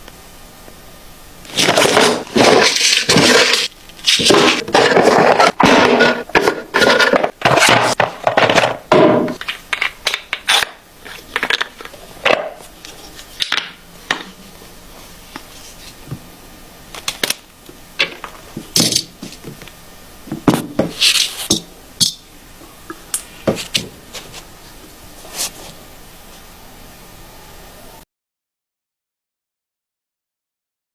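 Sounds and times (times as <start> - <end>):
packaging rustling and scraping: 1.5 - 13.4, 20.6 - 21.6, 23.2 - 26.5.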